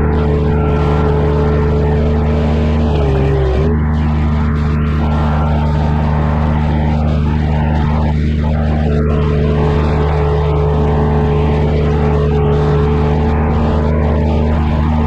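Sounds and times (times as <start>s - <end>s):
diesel machine running: 0.0s - 15.0s
high whine: 0.0s - 15.0s.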